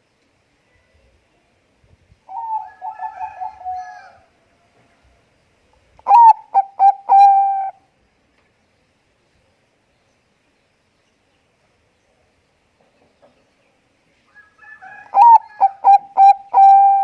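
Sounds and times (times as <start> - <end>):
dove cooing: 2.3 - 4.2, 6.1 - 7.8, 15.0 - 17.0.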